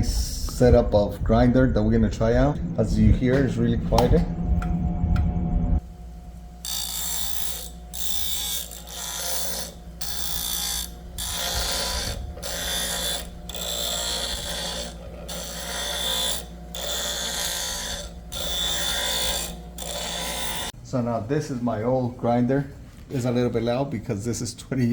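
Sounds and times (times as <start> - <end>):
grinder motor hum: 2.5 - 20.8
grinding rasp: 6.6 - 20.8.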